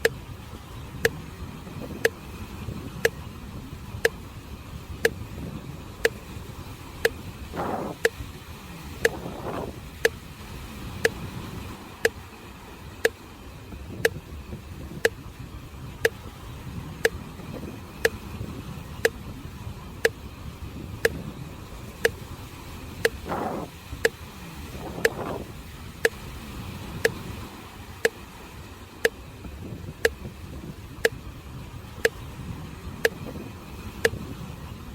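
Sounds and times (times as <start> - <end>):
sharp pitched ticks: 0.0 - 8.3, 8.9 - 12.4, 13.0 - 15.4, 16.0 - 19.3, 20.0 - 20.3, 20.9 - 22.3, 22.9 - 26.4, 27.0 - 27.3, 28.0 - 28.3, 29.0 - 31.3, 31.9 - 32.4, 33.0 - 34.2
sea waves: 0.0 - 34.9
wind: 0.0 - 34.9.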